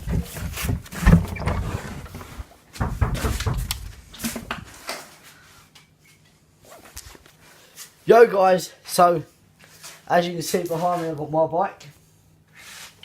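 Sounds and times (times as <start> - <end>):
irregular knocks and clatters: 0.0 - 4.7.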